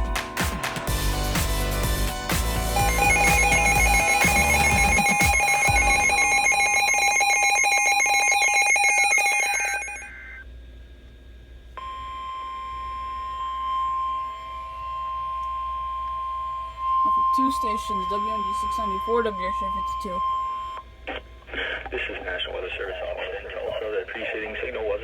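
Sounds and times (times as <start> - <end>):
steady warning alarm tone: 0.9 - 10.5, 11.8 - 21.5
data burst chatter with tones: 17.0 - 25.0.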